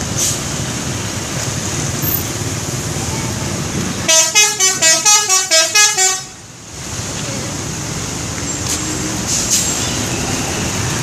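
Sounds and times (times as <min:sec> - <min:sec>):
road noise: 0:00.0 - 0:11.0
bus horn playing a tune: 0:04.1 - 0:06.4.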